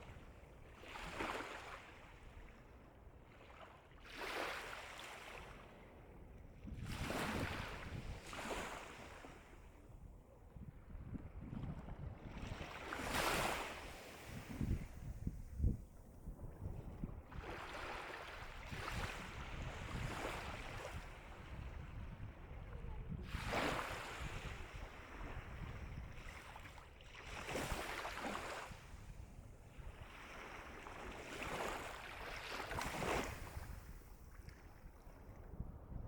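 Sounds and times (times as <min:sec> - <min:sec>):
sea waves breaking on shore: 0:00.0 - 0:02.5, 0:03.4 - 0:05.8, 0:06.8 - 0:09.7, 0:12.4 - 0:15.4, 0:17.2 - 0:22.6, 0:23.2 - 0:34.9
wind rumble on microphone: 0:06.5 - 0:36.0.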